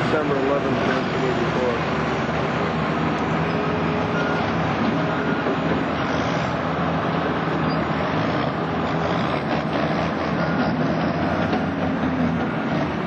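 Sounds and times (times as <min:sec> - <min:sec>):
heavy vehicle engines running: 0:00.0 - 0:13.0.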